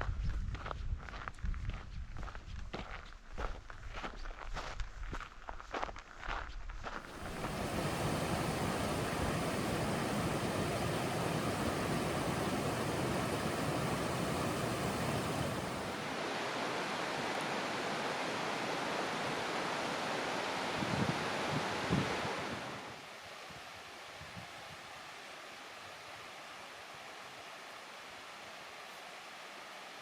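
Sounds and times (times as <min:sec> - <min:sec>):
footsteps on trail: 0:00.5 - 0:07.6
steady rushing noise: 0:07.0 - 0:23.0.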